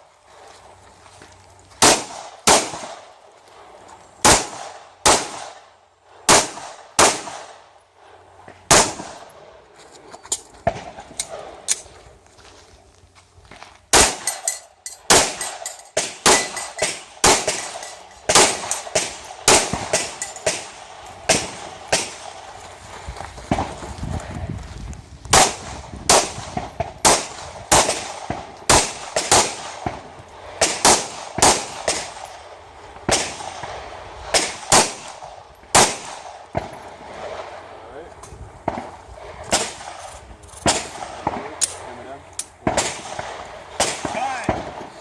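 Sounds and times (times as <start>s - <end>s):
pistol shots: 1.8s - 3.0s, 4.2s - 5.6s, 6.3s - 7.6s, 8.7s - 9.3s, 13.9s - 22.4s, 25.3s - 32.3s, 33.0s - 37.4s, 42.6s - 44.9s.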